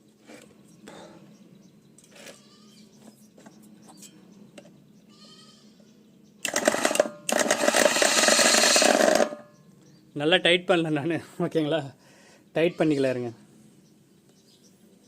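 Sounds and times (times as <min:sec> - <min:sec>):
mixer grinder running with rattle: 0:06.5 - 0:09.4
man talking: 0:10.2 - 0:12.0, 0:12.6 - 0:13.4.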